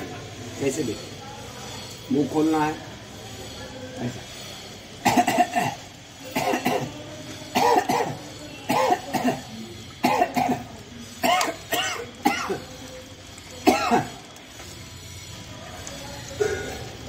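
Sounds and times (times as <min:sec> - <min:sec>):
man coughing and gagging: 0:05.0 - 0:05.8, 0:06.4 - 0:06.9, 0:07.6 - 0:12.6, 0:13.6 - 0:14.1.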